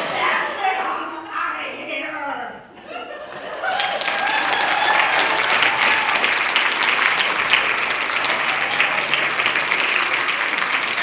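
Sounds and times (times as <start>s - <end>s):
audience cheering: 3.6s - 11.0s
audience clapping: 3.6s - 11.0s.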